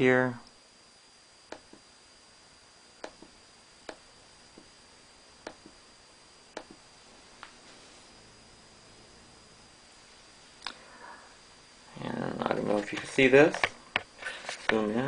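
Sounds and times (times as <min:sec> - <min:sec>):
faint high-pitched whine: 0:00.0 - 0:15.0
computer mouse clicks: 0:01.5 - 0:01.8, 0:03.0 - 0:03.3, 0:05.4 - 0:05.8.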